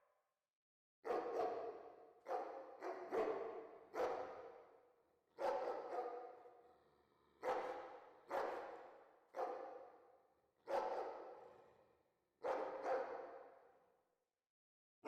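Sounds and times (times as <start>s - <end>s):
distant dog barking with echo: 1.0s - 4.7s, 5.4s - 6.7s, 7.4s - 11.7s, 12.4s - 13.8s.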